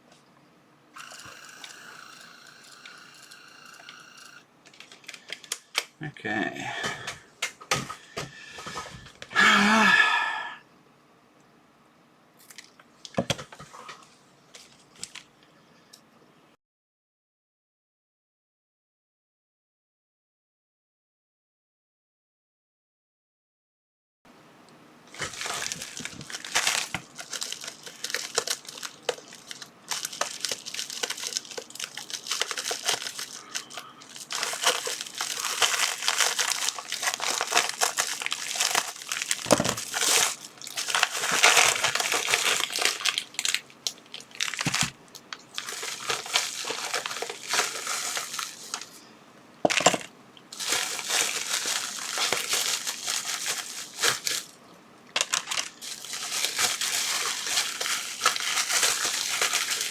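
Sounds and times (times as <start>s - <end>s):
plastic packaging crinkling: 4.6s - 6.0s, 12.4s - 15.4s, 25.1s - 59.9s.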